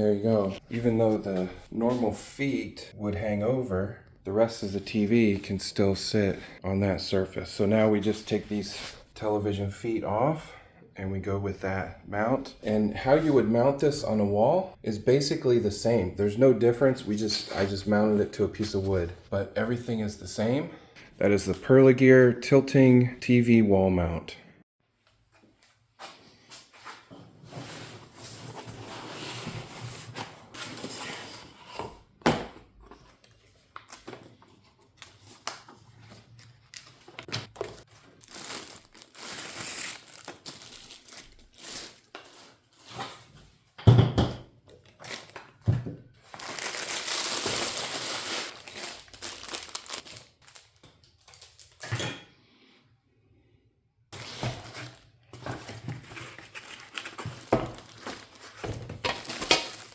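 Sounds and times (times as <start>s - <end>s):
crinkling and rustling: 32.8s - 43.5s, 44.6s - 51.9s, 54.2s - 59.9s.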